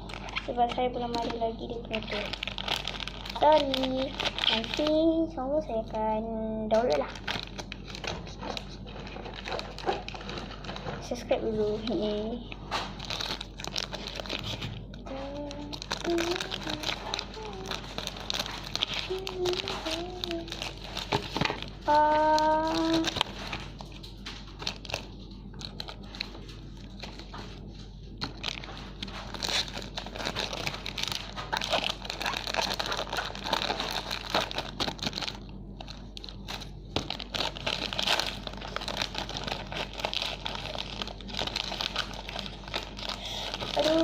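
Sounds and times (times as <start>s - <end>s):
plastic packaging crinkling: 0.0s - 44.0s
person humming: 19.0s - 20.6s, 21.9s - 23.1s, 43.7s - 44.0s.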